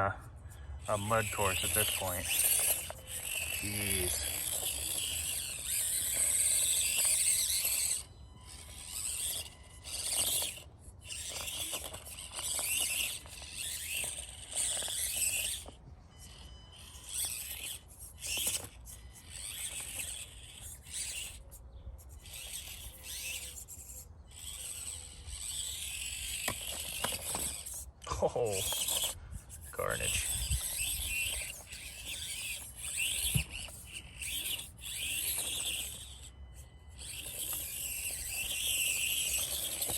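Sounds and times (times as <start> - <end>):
small electric motor and gears whining: 0.0 - 39.9.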